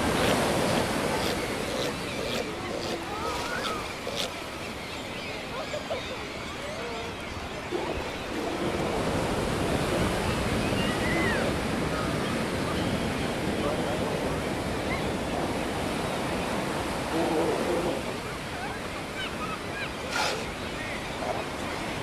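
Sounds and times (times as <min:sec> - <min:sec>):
ocean waves washing: 0:00.0 - 0:05.6.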